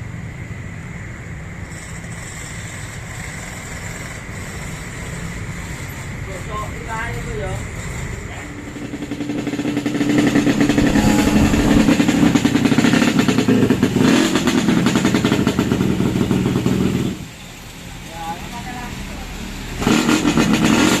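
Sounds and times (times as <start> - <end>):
motorcycle engine revving: 7.0 - 17.3, 19.8 - 21.0.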